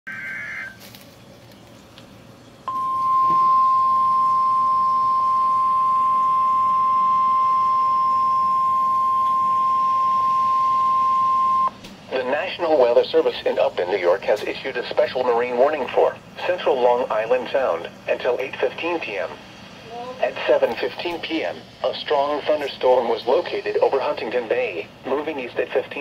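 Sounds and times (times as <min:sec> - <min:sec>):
steady high alarm tone: 0:02.7 - 0:11.8
faint radio hiss: 0:11.7 - 0:26.0.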